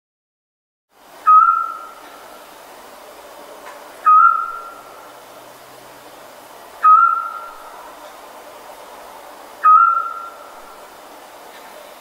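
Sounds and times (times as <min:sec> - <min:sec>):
faint background hiss: 0:00.9 - 0:12.0
owl whistled call: 0:01.2 - 0:02.0, 0:04.0 - 0:04.9, 0:06.8 - 0:07.6, 0:09.6 - 0:10.6.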